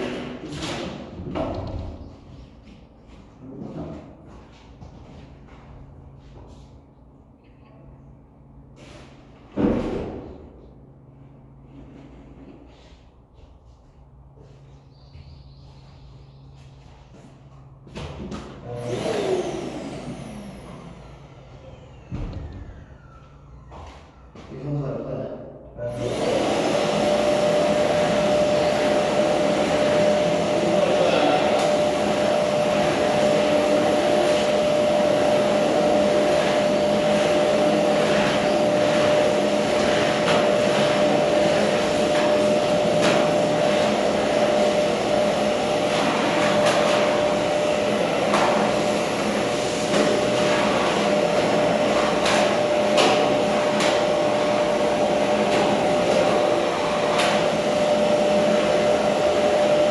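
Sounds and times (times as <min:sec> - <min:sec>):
vacuum cleaner whine: 0:18.2 - 0:24.8, 0:25.8 - 0:59.9.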